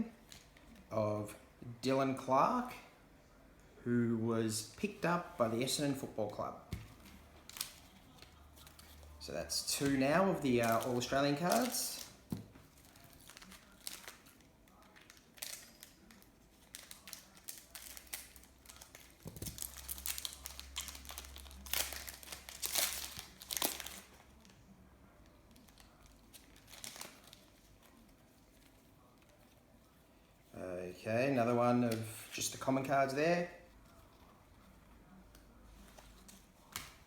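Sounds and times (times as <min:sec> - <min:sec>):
plastic wrapper crinkling and tearing: 0:06.9 - 0:29.6.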